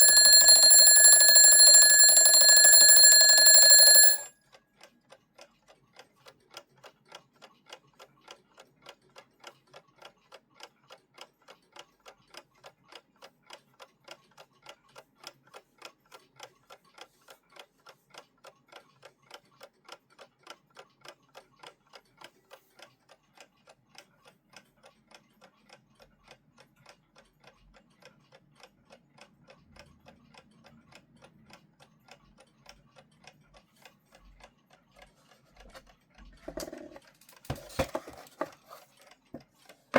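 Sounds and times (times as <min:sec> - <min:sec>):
alarm clock ticking faintly: 0:00.0 - 0:04.3.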